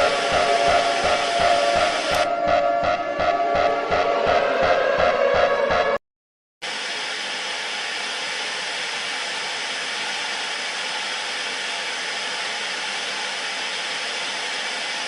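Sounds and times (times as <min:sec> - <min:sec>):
hissing rushing noise: 0:00.0 - 0:02.3.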